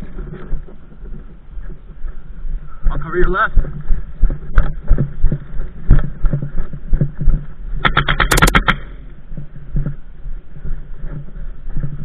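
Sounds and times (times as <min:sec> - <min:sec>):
airsoft rifle burst of clicks: 0:07.9 - 0:08.8.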